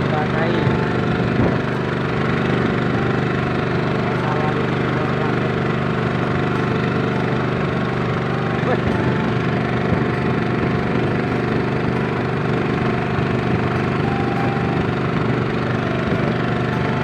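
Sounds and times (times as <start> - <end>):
small engine running: 0.0 - 17.0.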